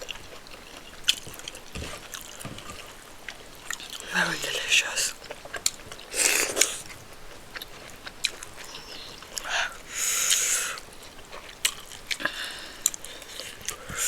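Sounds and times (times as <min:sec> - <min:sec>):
person chewing soft food: 0:00.0 - 0:14.0
wet mouth clicks: 0:05.6 - 0:07.0
breathy hiss: 0:06.1 - 0:07.0, 0:08.6 - 0:11.1, 0:12.2 - 0:14.0.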